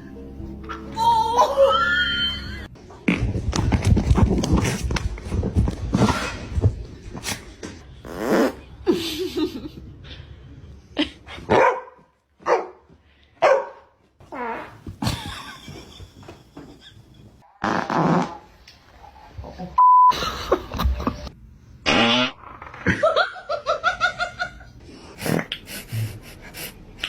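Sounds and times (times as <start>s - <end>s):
fart noise: 3.0s - 4.0s, 8.0s - 8.8s, 14.3s - 15.1s, 17.6s - 18.5s, 21.8s - 23.0s
dog barking: 11.5s - 12.8s, 13.4s - 13.9s.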